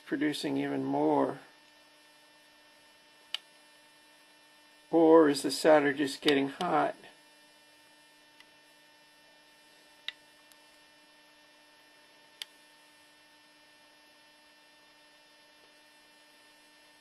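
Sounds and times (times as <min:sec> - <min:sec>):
faint electrical hum: 0:00.0 - 0:17.0.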